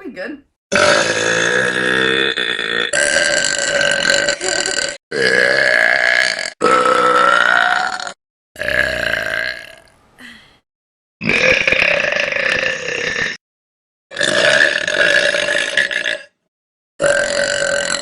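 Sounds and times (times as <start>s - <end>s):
women belching: 0.7s - 10.4s, 11.2s - 13.4s.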